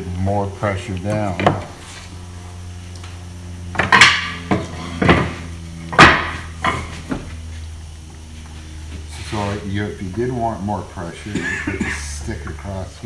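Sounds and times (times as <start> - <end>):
steady low hum: 0.0 - 13.0
sharp knocks: 3.7 - 7.4.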